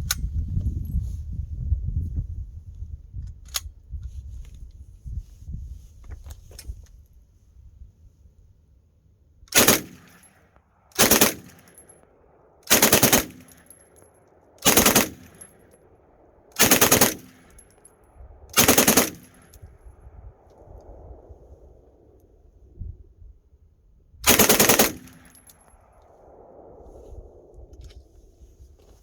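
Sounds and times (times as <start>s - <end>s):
submachine gun bursts: 9.5s - 10.2s, 11.0s - 11.7s, 12.7s - 13.7s, 14.6s - 15.5s, 16.6s - 17.6s, 18.6s - 19.5s, 24.3s - 25.4s.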